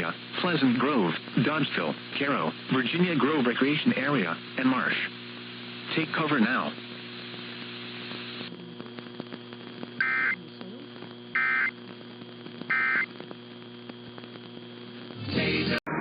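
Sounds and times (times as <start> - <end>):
radio reception hum: 0.0 - 16.0
radio static: 0.0 - 16.0
two-tone data signal bursts: 10.0 - 10.4, 11.4 - 11.7, 12.7 - 13.1.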